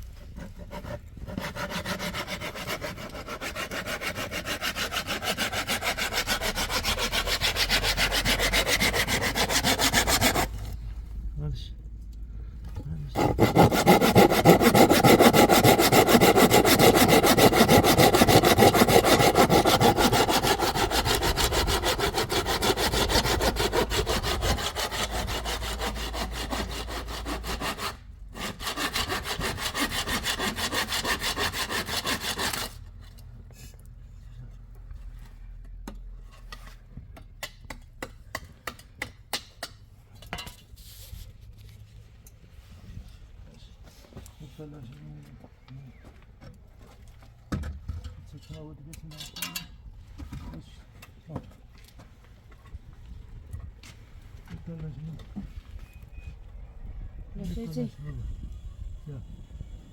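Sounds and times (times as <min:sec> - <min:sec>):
saw cutting wood: 0:00.4 - 0:10.8, 0:13.2 - 0:32.8.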